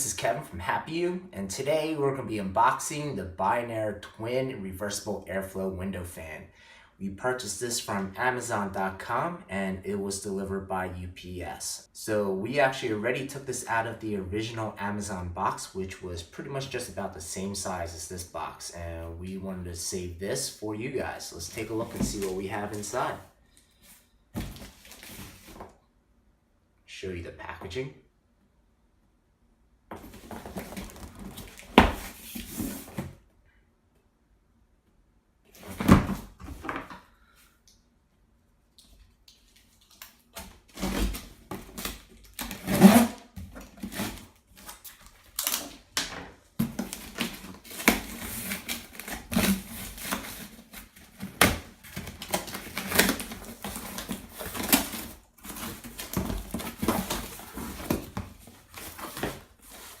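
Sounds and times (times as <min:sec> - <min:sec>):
cardboard box rustling and scraping: 0:46.6 - 1:00.0.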